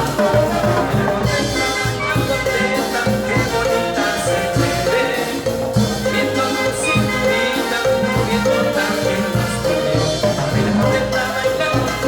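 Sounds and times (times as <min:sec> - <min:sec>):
bass and percussion beat: 0:00.0 - 0:12.0
brass band horn melody: 0:00.0 - 0:12.0.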